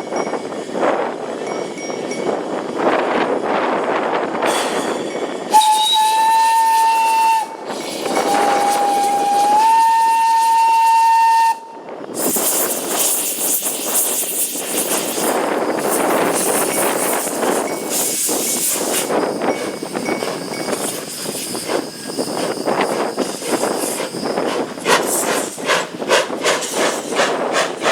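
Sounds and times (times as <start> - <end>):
steam locomotive whistle: 5.5 - 12.2
hiss of escaping steam: 5.5 - 27.9.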